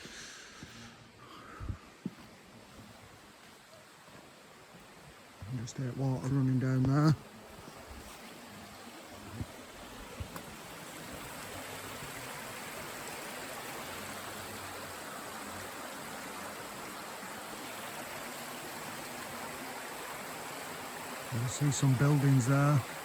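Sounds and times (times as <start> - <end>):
stream water rushing: 0.0 - 23.0.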